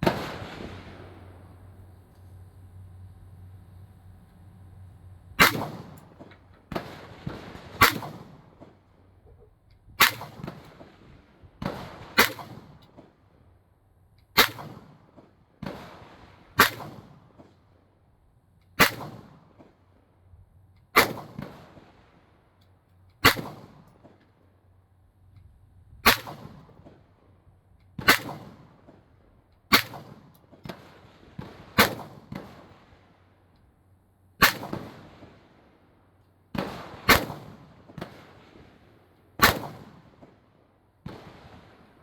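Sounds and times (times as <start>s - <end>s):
gunshots echoing: 0.0s - 1.4s, 5.4s - 8.8s, 10.0s - 10.8s, 23.2s - 23.8s, 28.0s - 28.8s, 34.4s - 35.2s, 39.4s - 40.1s.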